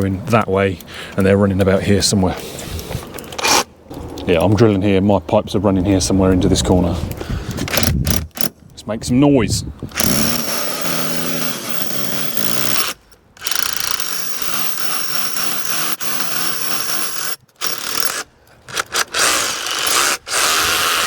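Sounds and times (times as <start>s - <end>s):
power drill boring through brick: 10.0s - 21.0s.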